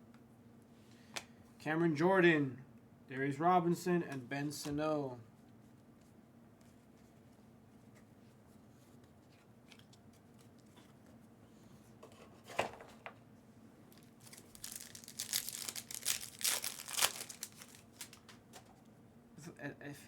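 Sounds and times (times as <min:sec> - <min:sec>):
foil wrapper tearing: 0:13.9 - 0:18.3
foil wrapper crinkling: 0:13.9 - 0:18.4.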